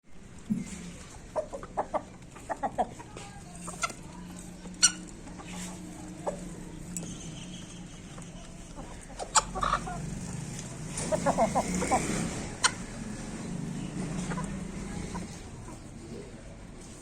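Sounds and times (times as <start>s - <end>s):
hens clucking: 0.3s - 17.0s.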